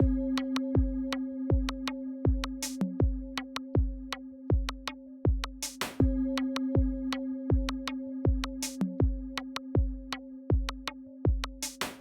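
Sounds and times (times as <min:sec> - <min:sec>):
kick drum: 0:00.0 - 0:11.6
hi-hat ticks: 0:01.7 - 0:03.5, 0:04.7 - 0:06.1, 0:07.7 - 0:09.6, 0:10.6 - 0:12.0.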